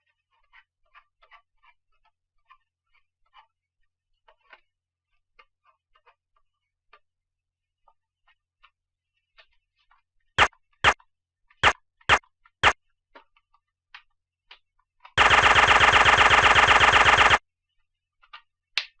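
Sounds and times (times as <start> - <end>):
automatic rifle fire: 15.2 - 17.4.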